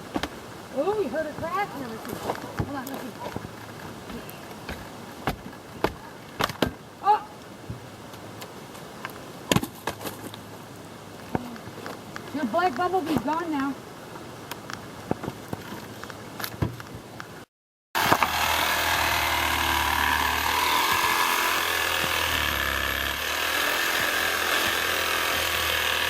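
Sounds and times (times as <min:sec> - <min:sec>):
power saw cutting wood: 0:18.0 - 0:26.0.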